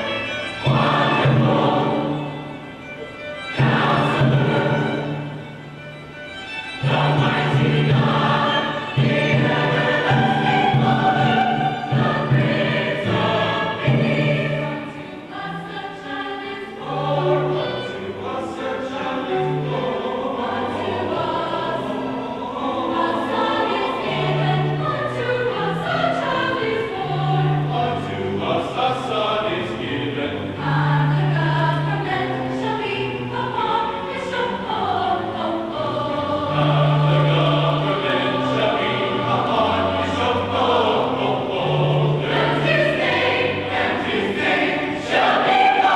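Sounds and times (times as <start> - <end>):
choir singing in harmony: 0.0 - 45.9.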